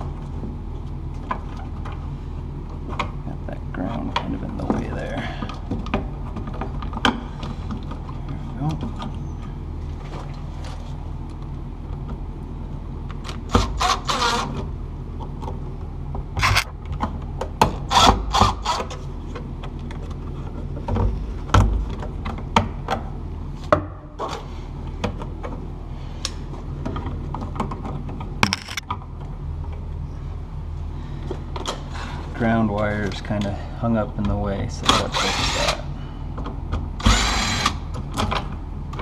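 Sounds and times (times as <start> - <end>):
steady low hum: 0.0 - 39.0
sharp clicks and knocks: 14.6 - 23.1, 26.2 - 29.8
wires scraping and rubbing: 16.4 - 16.7, 27.1 - 28.8.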